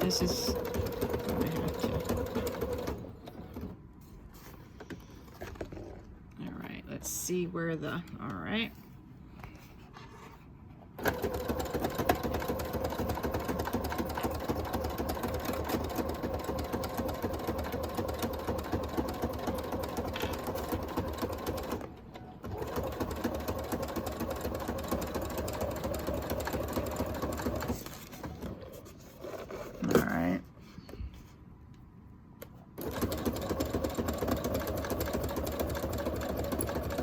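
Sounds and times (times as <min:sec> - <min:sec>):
sewing machine stitching: 0:00.0 - 0:03.8, 0:11.0 - 0:28.6, 0:32.8 - 0:37.0.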